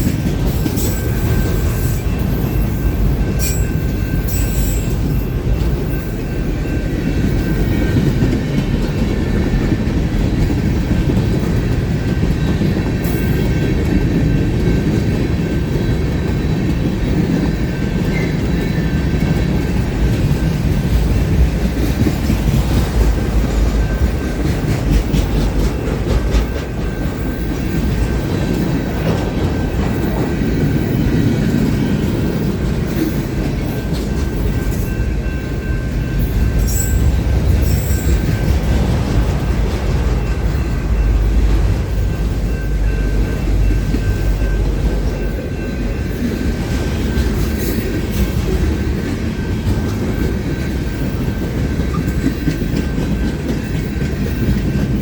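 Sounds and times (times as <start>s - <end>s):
train wheels rumbling on rails: 0.0s - 55.0s
clacking over rail joints: 5.0s - 35.0s.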